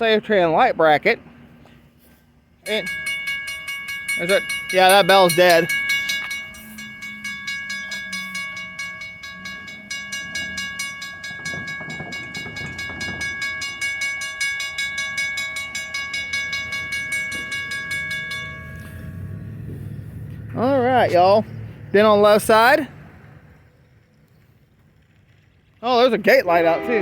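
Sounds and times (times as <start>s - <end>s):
freight train rumble: 0.0s - 27.0s
railroad crossing bell ringing: 2.6s - 22.9s, 26.2s - 27.0s.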